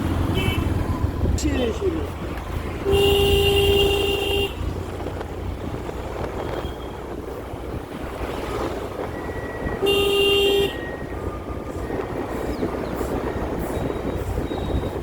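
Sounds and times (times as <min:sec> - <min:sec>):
low road rumble: 0:00.0 - 0:15.0
vehicle horn: 0:00.3 - 0:00.7, 0:02.8 - 0:04.7, 0:09.8 - 0:10.9.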